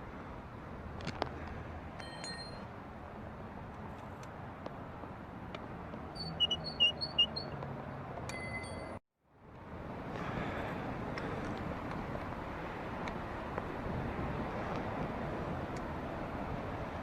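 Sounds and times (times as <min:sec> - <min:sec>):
steady outdoor hiss: 0:00.0 - 0:06.9, 0:09.3 - 0:17.0
small bird chirping: 0:06.2 - 0:07.6.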